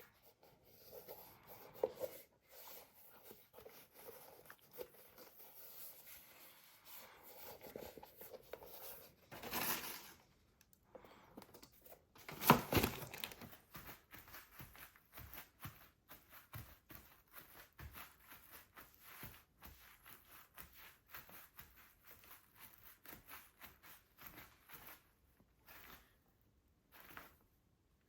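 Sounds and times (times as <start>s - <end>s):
paper rustling and crinkling: 0.8s - 10.3s, 11.4s - 21.0s
paper ripping or crumpling: 9.3s - 10.2s, 12.2s - 13.9s.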